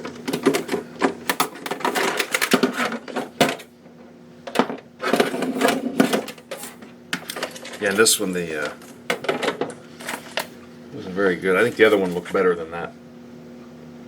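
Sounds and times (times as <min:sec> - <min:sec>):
plastic parts clicking and rattling: 0:00.0 - 0:03.7, 0:04.4 - 0:10.5
steady low hum: 0:00.0 - 0:14.0.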